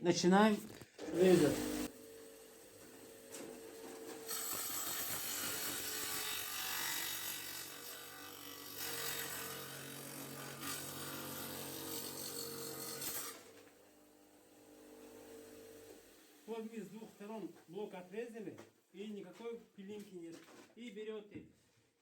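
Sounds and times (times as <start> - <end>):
tile saw cutting masonry block: 1.1 - 16.6.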